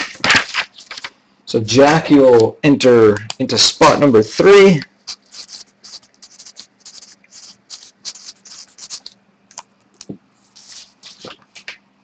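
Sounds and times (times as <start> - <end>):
pen scratching on paper: 5.1 - 9.1.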